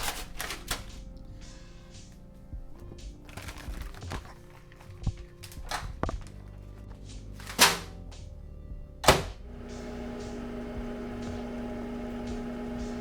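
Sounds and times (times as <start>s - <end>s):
microwave oven humming: 9.0s - 13.0s.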